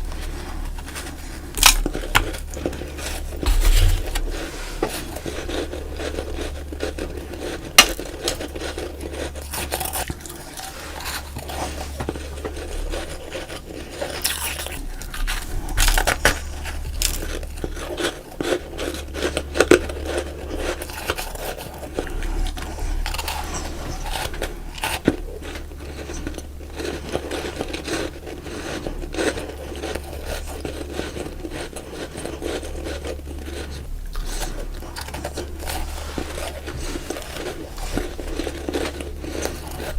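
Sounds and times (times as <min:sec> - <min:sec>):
chewing ice crunches: 0:00.0 - 0:39.9
steady low hum: 0:00.0 - 0:39.9.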